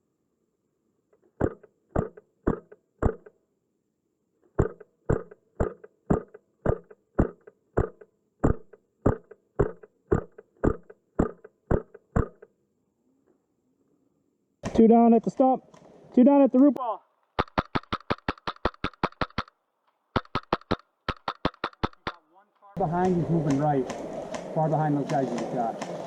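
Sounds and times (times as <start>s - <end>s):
airsoft rifle shots: 17.4s - 19.5s, 20.1s - 26.0s.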